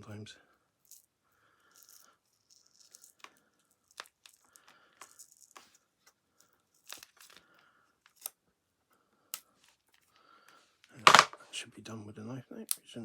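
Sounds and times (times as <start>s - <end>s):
knife scraping plastic: 11.1s - 11.4s.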